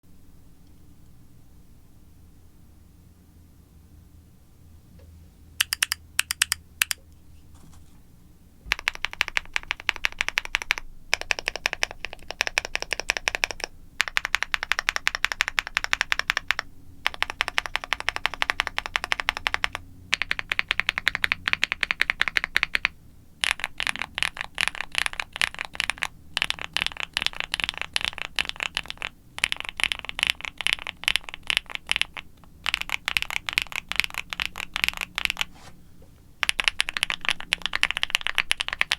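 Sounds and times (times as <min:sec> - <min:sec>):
mechanical keyboard typing: 0:05.6 - 0:07.0, 0:08.7 - 0:35.5, 0:36.4 - 0:38.9.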